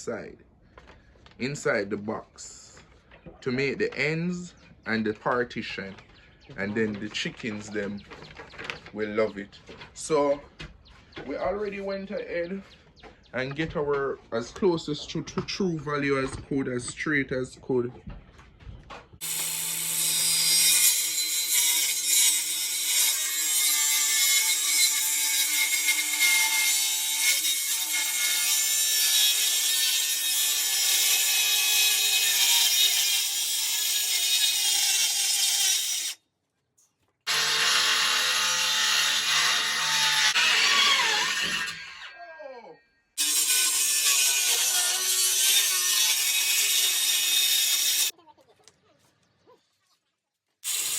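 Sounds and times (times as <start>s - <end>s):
power saw cutting plywood: 19.2s - 36.2s, 37.3s - 42.1s, 43.2s - 48.1s, 50.6s - 50.9s.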